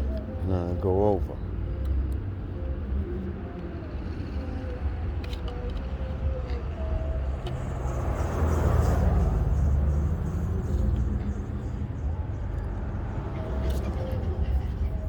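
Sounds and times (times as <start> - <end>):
street traffic rumbling: 0.0 - 15.0
vehicle passing: 5.9 - 15.0.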